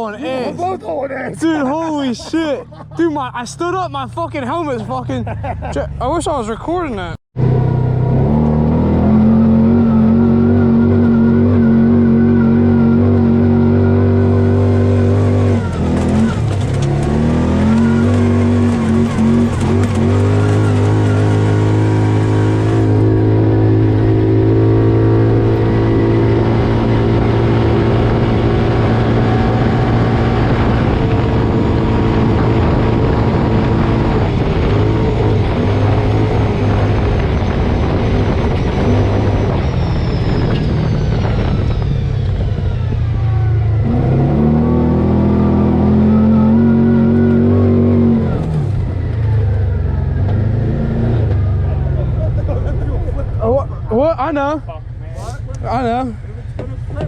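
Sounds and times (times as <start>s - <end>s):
dirt bike engine revving: 7.4s - 41.6s, 43.8s - 49.0s.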